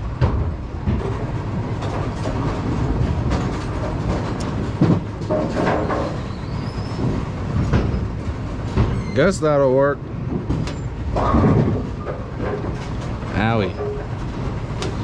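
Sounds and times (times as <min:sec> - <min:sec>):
knocks and clanks: 0:00.0 - 0:15.0
bowling pinsetters clattering: 0:00.1 - 0:08.0.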